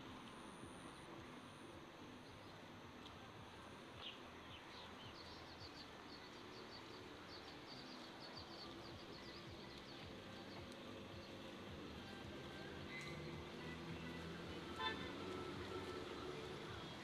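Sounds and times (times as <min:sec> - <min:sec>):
faint outdoor hiss: 0:00.0 - 0:17.0
bird chirping: 0:04.0 - 0:12.2.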